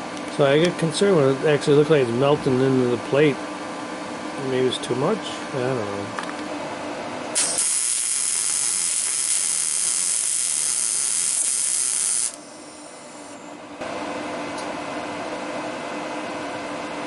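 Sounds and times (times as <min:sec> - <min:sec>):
welding arc hissing: 0:07.4 - 0:13.4.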